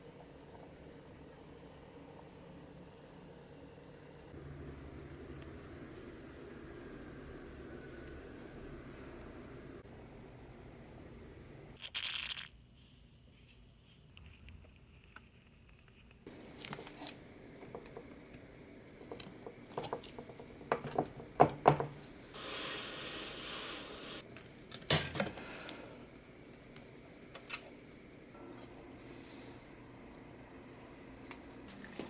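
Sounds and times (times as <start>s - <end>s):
metal parts and tools clinking: 11.8s - 12.6s
steady hiss: 22.0s - 24.3s.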